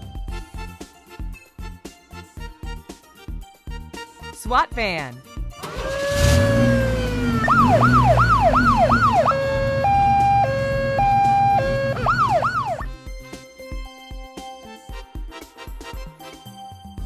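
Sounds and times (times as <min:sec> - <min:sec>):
engine rumble: 0:05.6 - 0:12.9
siren wailing: 0:05.7 - 0:12.9.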